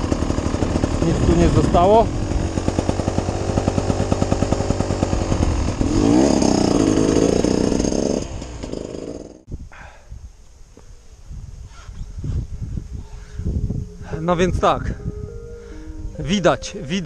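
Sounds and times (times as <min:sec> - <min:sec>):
two-stroke engine revving: 0:00.0 - 0:09.5.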